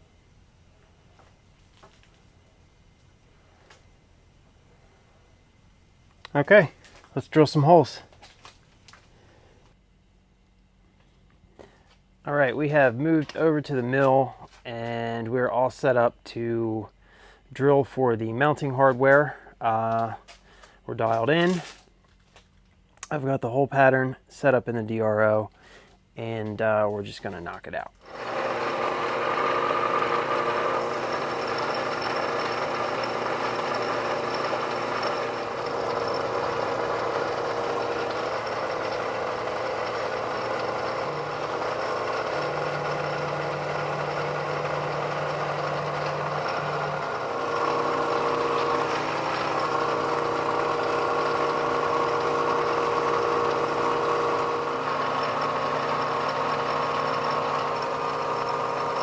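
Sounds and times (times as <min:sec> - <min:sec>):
milling machine humming: 0:28.0 - 0:59.0.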